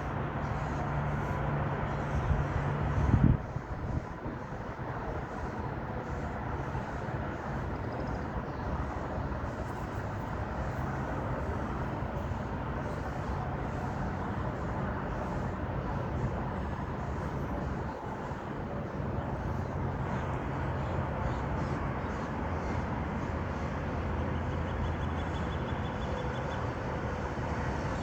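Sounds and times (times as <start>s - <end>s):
road traffic: 0.0s - 28.0s.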